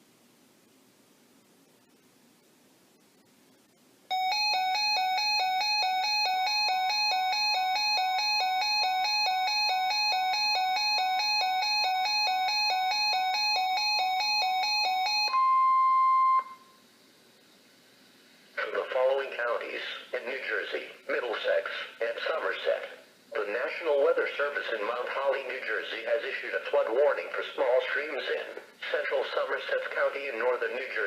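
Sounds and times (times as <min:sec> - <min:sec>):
steady warning alarm tone: 0:04.1 - 0:16.8.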